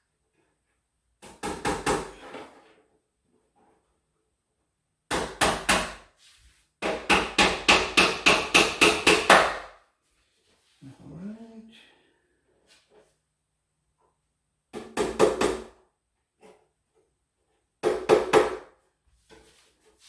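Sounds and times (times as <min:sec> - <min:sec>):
hammer driving nails into wood: 0:06.8 - 0:09.7.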